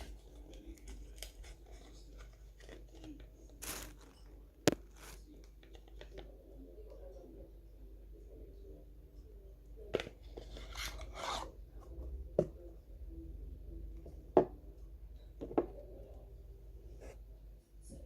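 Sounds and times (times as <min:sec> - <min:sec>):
packaging crinkly rustle: 0:00.0 - 0:06.0.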